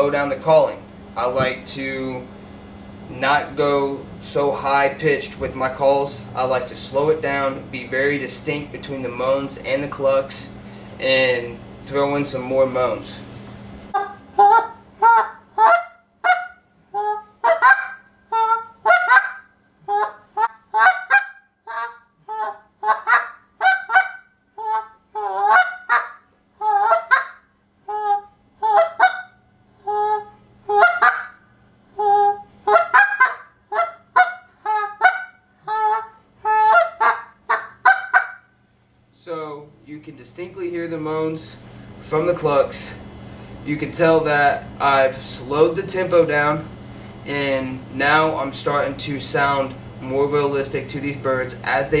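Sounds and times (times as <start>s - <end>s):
goose call moans and clucks: 14.0s - 31.4s, 32.0s - 38.4s.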